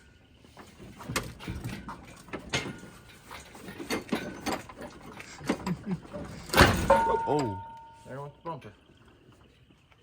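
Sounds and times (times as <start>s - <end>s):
metallic knocks and clunks: 0.9s - 5.6s, 6.2s - 8.0s.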